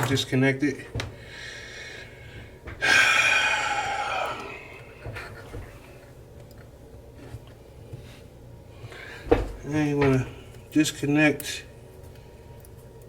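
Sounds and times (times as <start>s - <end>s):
heavy breath out: 1.2s - 5.4s.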